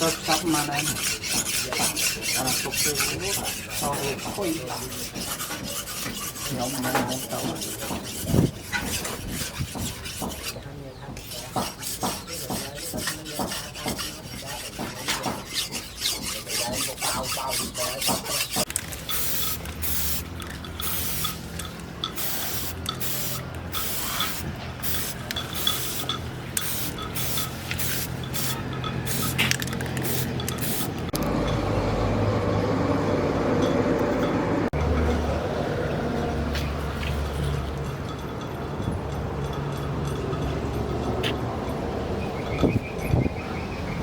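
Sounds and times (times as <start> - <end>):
file rasping on steel: 0.0 - 18.7.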